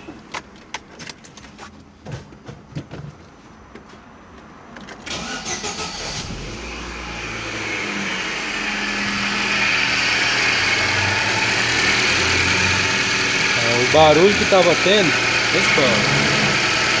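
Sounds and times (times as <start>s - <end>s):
car engine starting and running: 4.4s - 17.0s.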